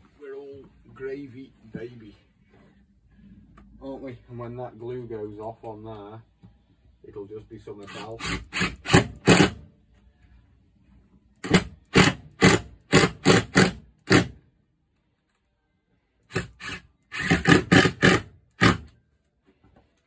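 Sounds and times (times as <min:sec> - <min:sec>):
hammer striking nails into wood: 0:08.5 - 0:09.6, 0:11.4 - 0:14.4, 0:16.3 - 0:18.9.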